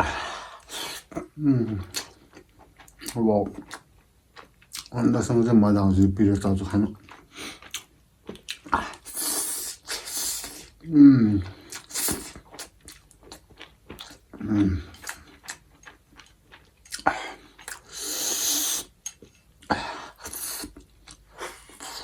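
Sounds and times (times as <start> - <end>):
wet chewing: 6.9 - 10.8, 11.4 - 18.2.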